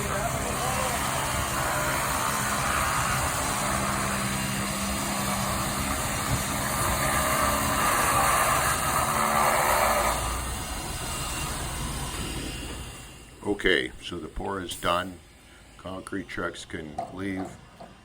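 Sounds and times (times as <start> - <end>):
engine running: 0.0 - 16.7.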